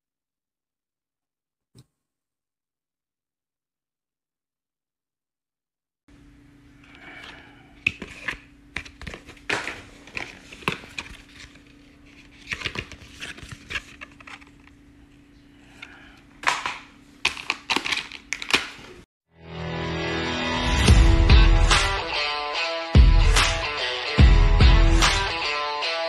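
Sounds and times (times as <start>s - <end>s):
faint hum: 6.1s - 17.2s.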